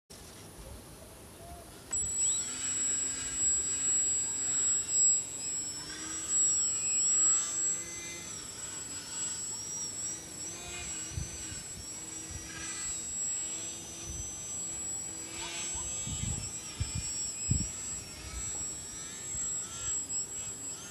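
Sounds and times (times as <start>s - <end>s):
model airplane motor whining: 1.8s - 20.9s
steady high-pitched tone: 1.9s - 20.9s.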